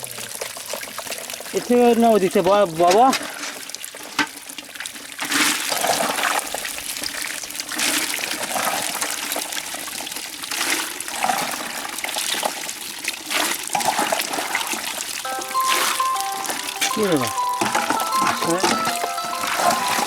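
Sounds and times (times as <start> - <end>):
water pouring and splashing: 0.3 - 6.4.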